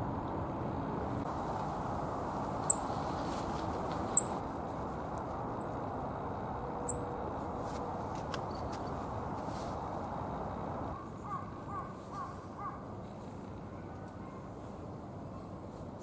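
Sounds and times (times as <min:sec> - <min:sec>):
low background rumble: 0:00.0 - 0:11.7.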